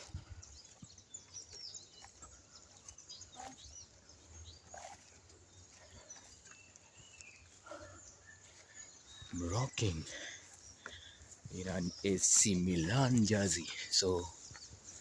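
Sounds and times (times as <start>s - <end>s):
faint bird chirping: 0.0s - 15.0s.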